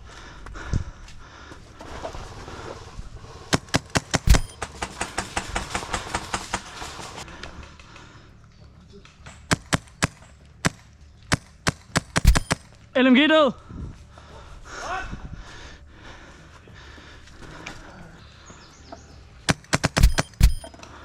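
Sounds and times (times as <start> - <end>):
airsoft guns firing: 3.5 - 7.2, 9.3 - 12.7, 19.5 - 20.7.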